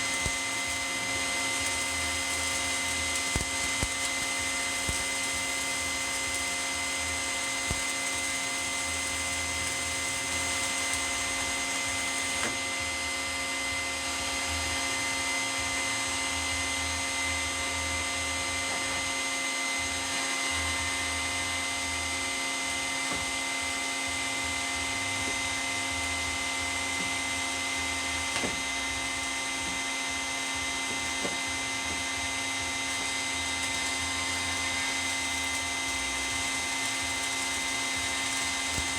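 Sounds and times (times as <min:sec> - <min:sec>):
shop vac motor whine: 0:00.0 - 0:38.9.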